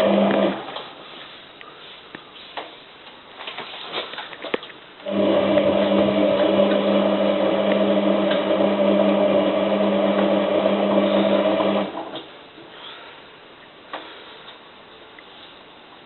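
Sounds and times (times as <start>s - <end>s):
washing machine motor tumbling drum: 0.0s - 0.9s, 5.0s - 12.3s.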